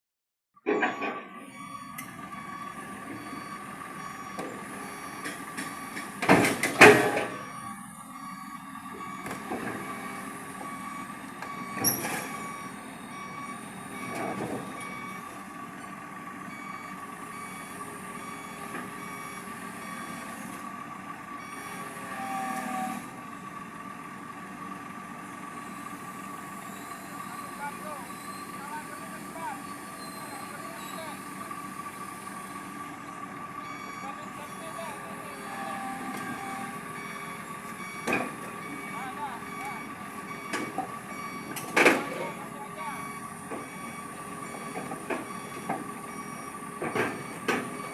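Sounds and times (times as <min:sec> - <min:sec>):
excavator engine running: 0:00.8 - 0:47.9
travel alarm beeping: 0:06.9 - 0:15.3, 0:33.6 - 0:47.9.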